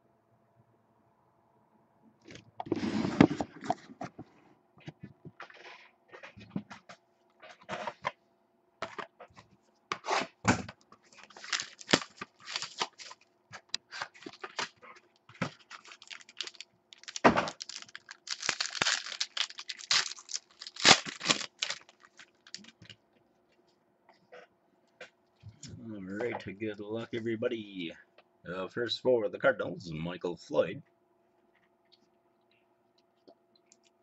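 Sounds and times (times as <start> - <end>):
plastic wrap and foil tearing: 11.1 - 13.2, 13.9 - 22.8.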